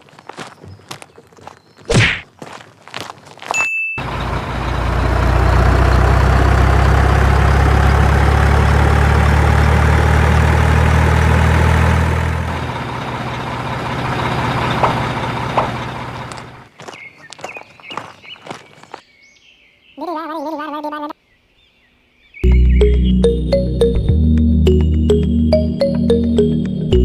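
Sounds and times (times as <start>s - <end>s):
tractor engine running: 4.0s - 16.8s.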